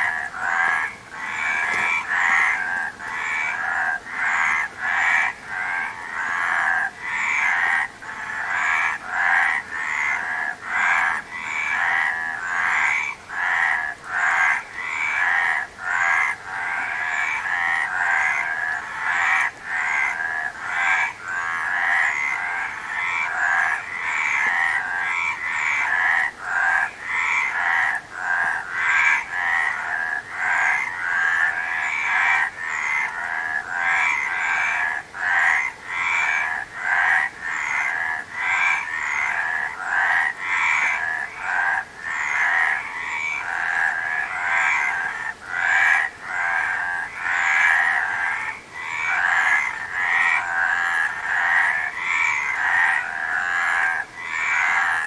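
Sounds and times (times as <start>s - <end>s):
frogs croaking: 0.0s - 55.0s.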